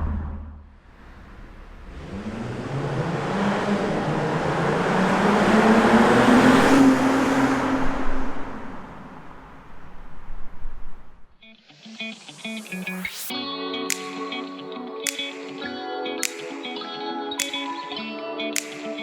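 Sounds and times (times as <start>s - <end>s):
car engine accelerating: 0.0s - 11.2s.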